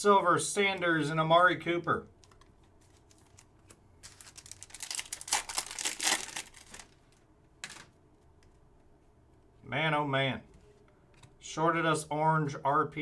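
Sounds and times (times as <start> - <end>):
foil wrapper tearing and crinkling: 2.2 - 7.9.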